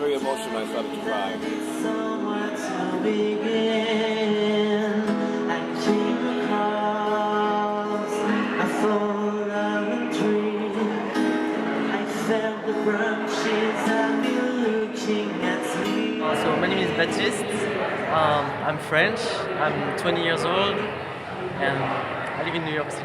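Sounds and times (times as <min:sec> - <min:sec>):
person singing: 0:00.0 - 0:17.6
guitar: 0:00.0 - 0:23.0.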